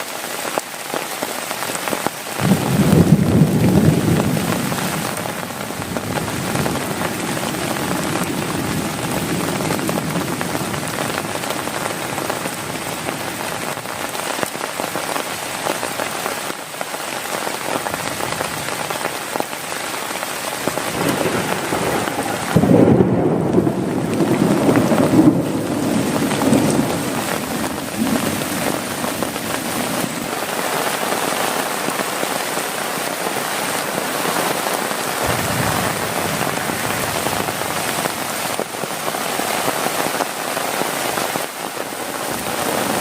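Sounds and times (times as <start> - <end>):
heavy rain on a tent: 0.0 - 43.0
thunder rumbling: 2.4 - 14.0, 20.6 - 30.5, 35.2 - 38.8.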